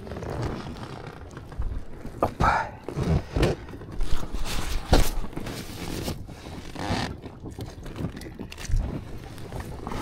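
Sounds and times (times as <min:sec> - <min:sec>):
rustling: 0:02.9 - 0:07.1.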